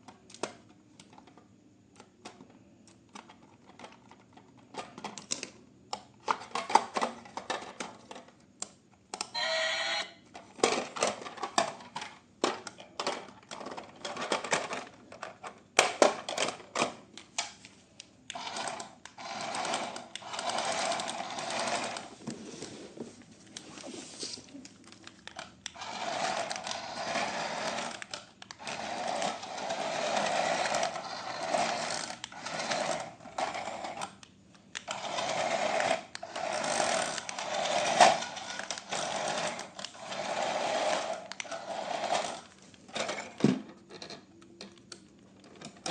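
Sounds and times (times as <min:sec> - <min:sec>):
brief electronic tone: 0:09.4 - 0:10.2
plastic toy clicks and knocks: 0:10.6 - 0:17.6, 0:33.9 - 0:45.9
toy motor and gears whirring: 0:18.3 - 0:22.2, 0:25.0 - 0:34.2, 0:34.8 - 0:43.1.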